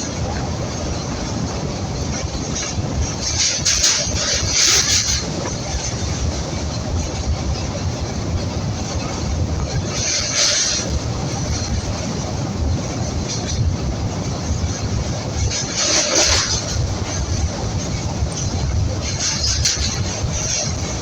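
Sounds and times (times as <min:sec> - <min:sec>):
train rumbling across bridge: 0:00.0 - 0:21.0.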